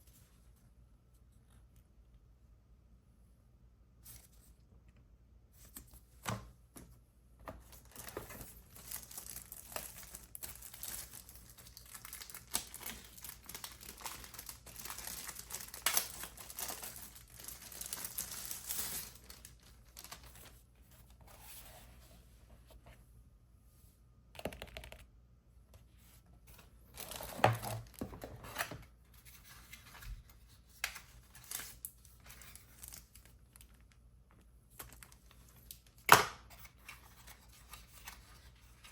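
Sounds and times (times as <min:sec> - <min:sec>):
packaging crinkling and tearing: 0:07.8 - 0:20.5, 0:27.0 - 0:28.7, 0:30.9 - 0:34.0.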